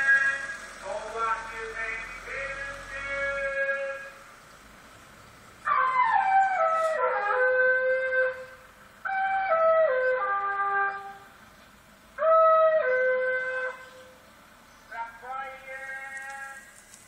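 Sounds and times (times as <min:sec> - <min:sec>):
recorded call through loudspeaker: 0:00.0 - 0:04.2, 0:14.9 - 0:16.7.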